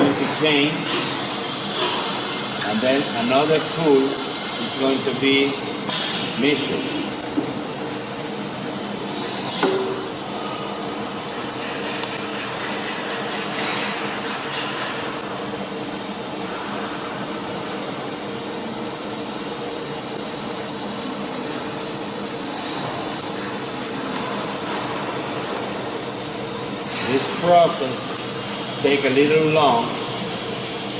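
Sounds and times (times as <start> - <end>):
router machine hiss and hum: 0.0 - 30.9.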